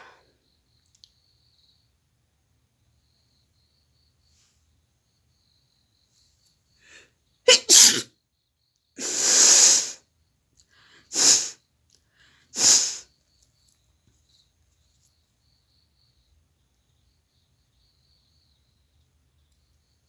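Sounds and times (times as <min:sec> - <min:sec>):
woman sneezing loudly: 0:07.5 - 0:08.1, 0:09.0 - 0:10.0, 0:11.1 - 0:11.5, 0:12.6 - 0:13.0.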